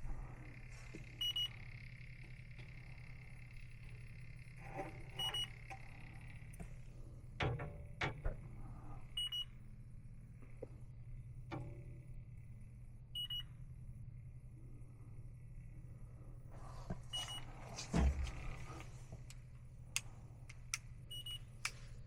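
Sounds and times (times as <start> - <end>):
steady low hum: 0.0 - 22.0
leak detector double beep: 1.2 - 1.7, 5.2 - 5.7, 9.2 - 9.6, 13.2 - 13.5, 21.1 - 21.5.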